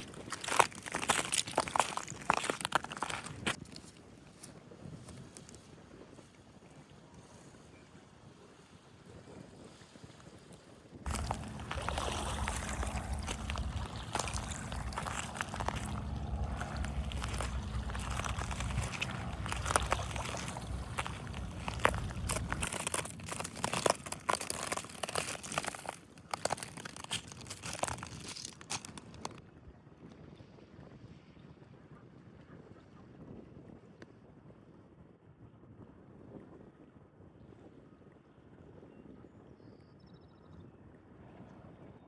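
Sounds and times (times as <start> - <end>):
crackling crunching clicks: 0.0 - 3.6, 11.1 - 29.4
low rumble: 11.1 - 25.2
water sloshing at shoreline: 11.1 - 29.3.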